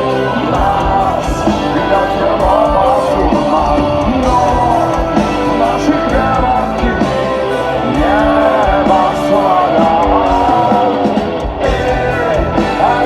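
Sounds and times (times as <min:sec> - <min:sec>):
loud rock music: 0:00.0 - 0:13.0
melodic lead line: 0:00.0 - 0:13.0.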